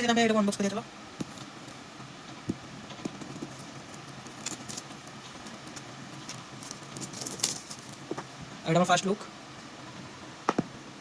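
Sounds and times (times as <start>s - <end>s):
cardboard packaging rustling: 3.0s - 8.4s.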